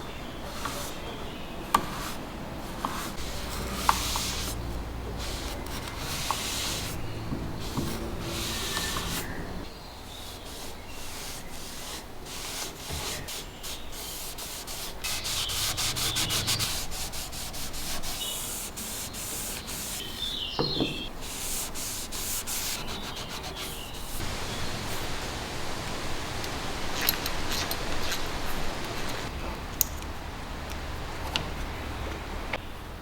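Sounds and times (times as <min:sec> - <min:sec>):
hand sanding strokes: 0:00.4 - 0:25.9.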